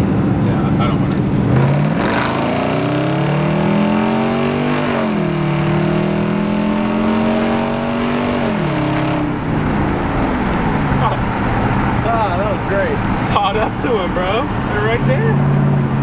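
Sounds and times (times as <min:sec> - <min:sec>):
engine revving hard: 0:00.0 - 0:12.2.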